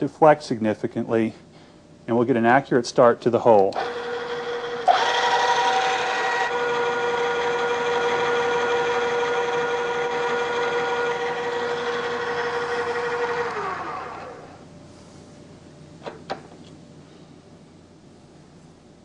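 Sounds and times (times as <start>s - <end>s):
drill press whining: 3.7s - 14.8s.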